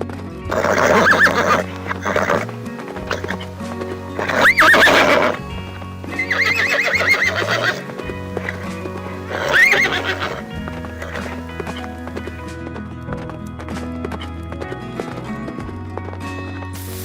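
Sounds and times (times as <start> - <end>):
background music: 0.0 - 17.0
high quavering animal calls: 0.5 - 2.5, 3.1 - 3.5, 4.1 - 5.4, 6.2 - 11.9.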